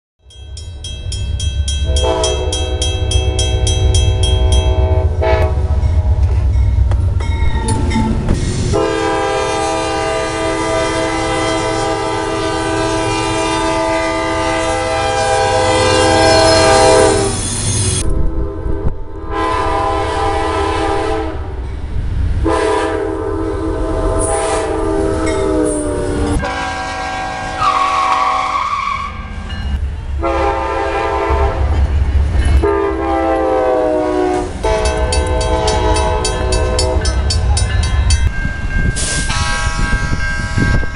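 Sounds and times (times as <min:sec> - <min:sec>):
rumble of rolling train: 0:00.2 - 0:40.9
train air horn blasts: 0:01.8 - 0:06.3, 0:08.7 - 0:17.5, 0:18.1 - 0:21.6, 0:22.4 - 0:29.3, 0:30.2 - 0:31.8, 0:32.6 - 0:37.4, 0:39.0 - 0:40.9.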